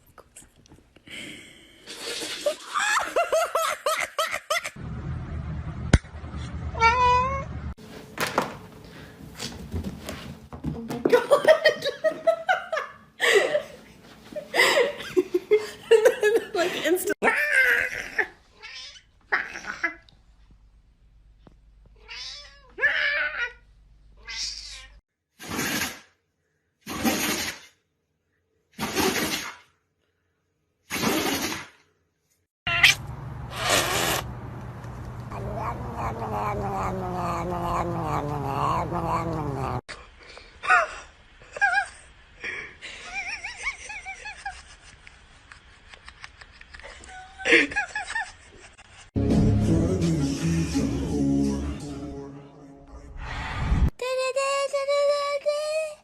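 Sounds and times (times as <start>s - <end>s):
animal wailing calls: 35.3s - 39.8s
hissing breath-like noises: 53.1s - 54.0s.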